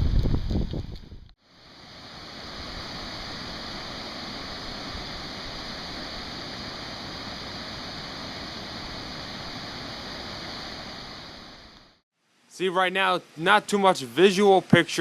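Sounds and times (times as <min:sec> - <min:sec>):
steady rain falling: 0:01.5 - 0:12.0.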